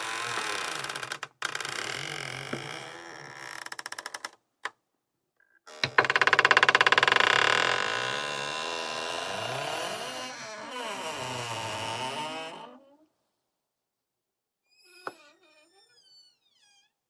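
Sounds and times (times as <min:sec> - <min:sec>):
door hinges creaking: 0:00.0 - 0:04.4, 0:05.7 - 0:12.6, 0:14.9 - 0:16.9.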